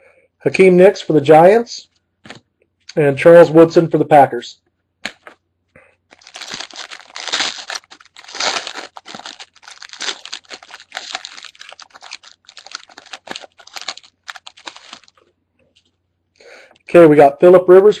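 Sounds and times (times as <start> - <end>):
wrapper crinkling as torn open: 6.1 - 15.2.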